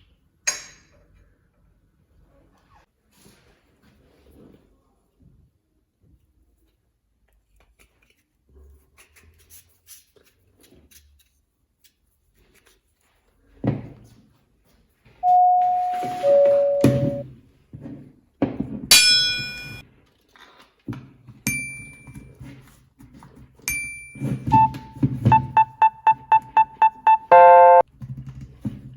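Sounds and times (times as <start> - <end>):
two-note ding-dong chime: 15.2 - 17.2, 18.9 - 19.8, 23.7 - 27.8
bright musical notes: 24.6 - 27.8.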